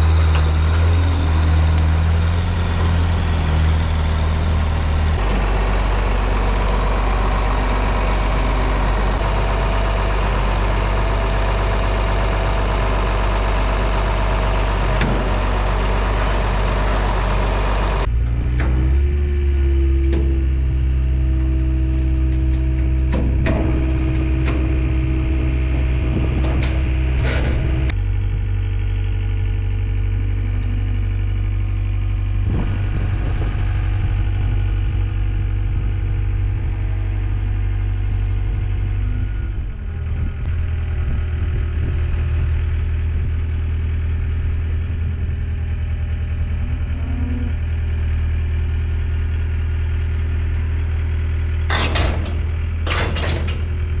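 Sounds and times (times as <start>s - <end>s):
machine engine running: 0.0s - 54.0s
metal knocks and clanks: 22.1s - 28.0s, 51.7s - 53.8s.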